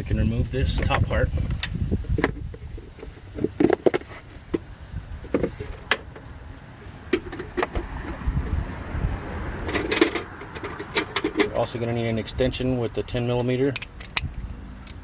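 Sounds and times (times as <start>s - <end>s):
low rumble: 4.2s - 11.0s.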